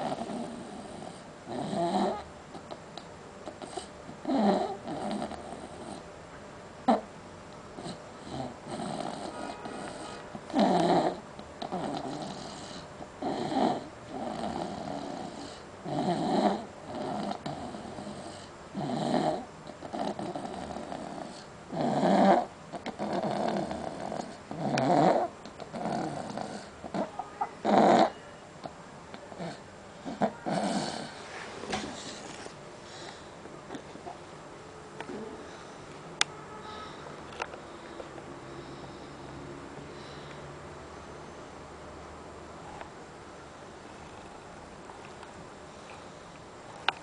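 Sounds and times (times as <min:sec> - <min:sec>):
soft breath: 0:35.1 - 0:41.2.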